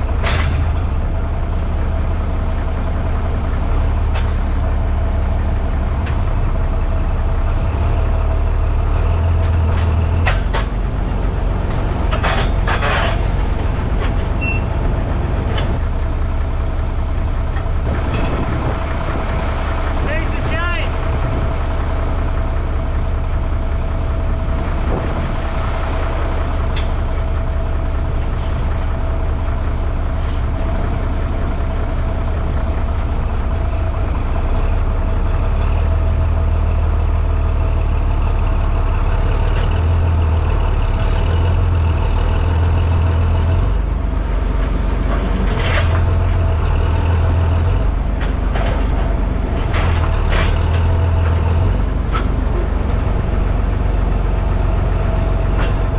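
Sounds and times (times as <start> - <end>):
clunks: 0.0 - 1.7, 3.9 - 4.7, 9.2 - 20.6, 26.4 - 31.3, 42.5 - 55.9
engine whine: 0.0 - 55.9
tractor engine running under load: 0.0 - 55.9.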